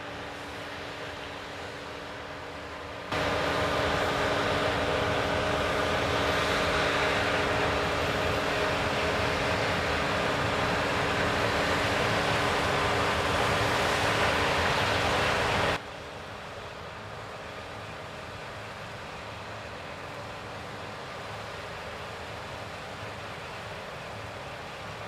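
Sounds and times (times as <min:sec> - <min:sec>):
combine harvester rushing noise: 0:03.1 - 0:15.8.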